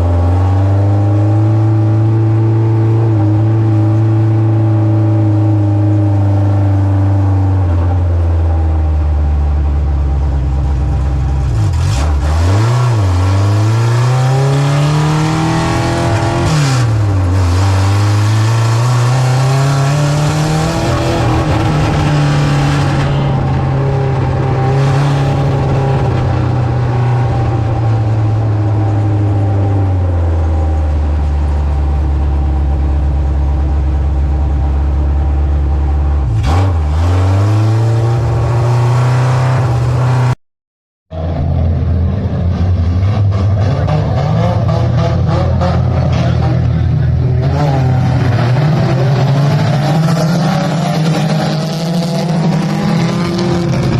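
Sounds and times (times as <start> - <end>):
race car engine revving: 9.6 - 40.4, 41.1 - 53.9.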